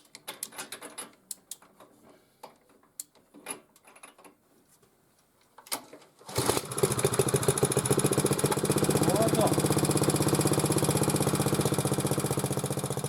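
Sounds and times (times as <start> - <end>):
small petrol engine running: 6.3 - 13.0.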